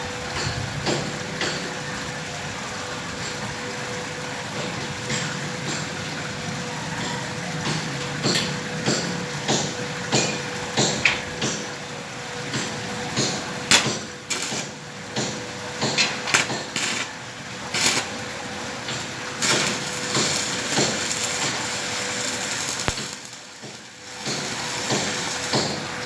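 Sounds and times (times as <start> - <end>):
continuous hissing noise: 7.8 - 26.0
hammer striking metal: 12.6 - 18.2.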